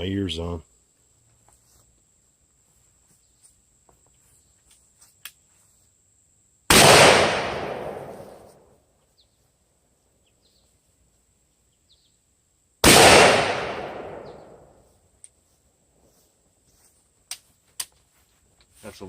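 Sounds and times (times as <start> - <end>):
shotgun blast: 6.7 - 8.4, 12.8 - 14.6.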